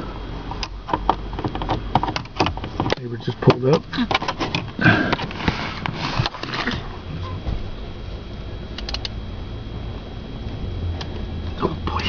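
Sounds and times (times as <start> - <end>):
steady low hum: 0.0 - 12.0
small clicks: 8.8 - 9.2.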